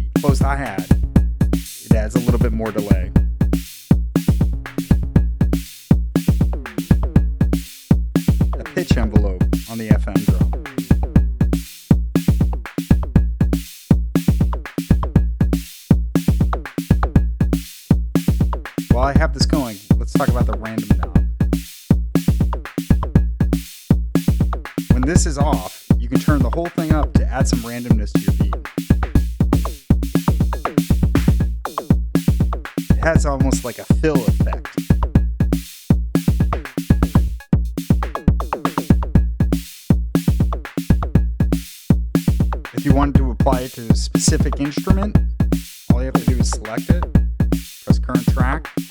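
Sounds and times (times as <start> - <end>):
deep kick drum: 0.0 - 48.9
drum hits sweeping down in pitch: 0.0 - 48.9
drum machine beat: 0.0 - 48.9
hi-hat and cymbal hiss: 0.0 - 48.9
pitch-sweeping drum hits: 8.2 - 11.6.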